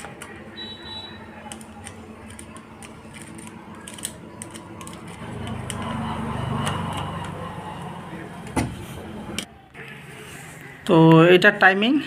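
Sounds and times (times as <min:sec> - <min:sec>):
engine rumble: 0:01.6 - 0:09.9.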